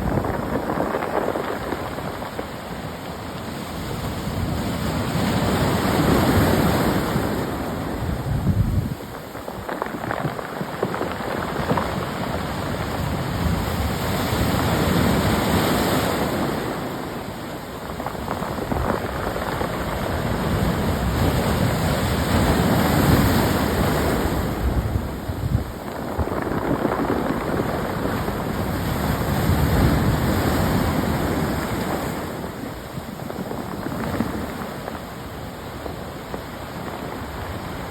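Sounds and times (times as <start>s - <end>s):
pebbles rattling in the surf: 0.0s - 2.7s, 8.4s - 13.2s, 17.9s - 35.2s
waves on pebble beach: 0.0s - 37.9s.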